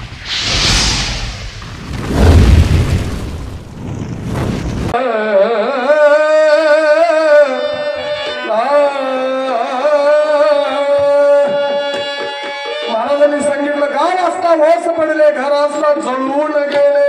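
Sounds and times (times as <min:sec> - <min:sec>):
person singing devotional song: 0:05.0 - 0:12.3.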